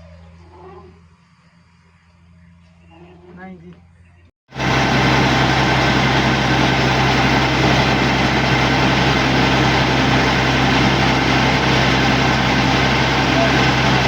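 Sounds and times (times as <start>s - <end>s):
heavy diesel engine roaring: 4.5s - 14.0s.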